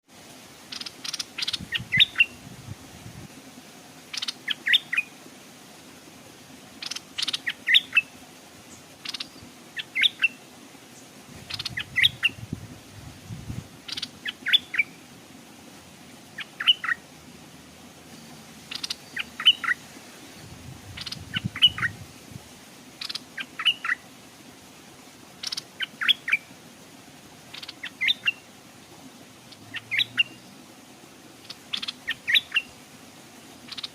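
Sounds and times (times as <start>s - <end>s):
bird singing bright notes: 18.1s - 22.0s.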